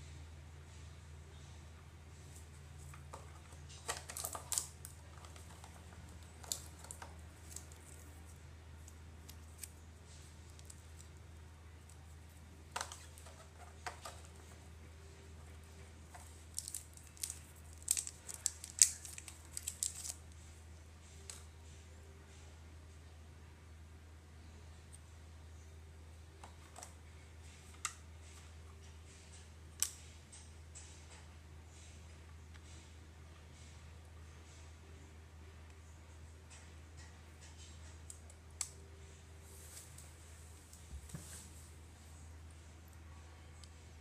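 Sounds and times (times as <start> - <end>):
steady low hum: 0.0 - 44.0
small objects clicking and tapping: 2.8 - 9.8, 16.1 - 20.2.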